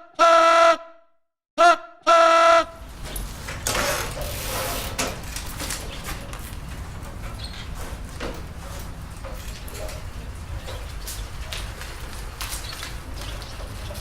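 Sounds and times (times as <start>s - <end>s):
vehicle horn: 0.0s - 2.9s
low rumble and clatter: 2.8s - 14.0s.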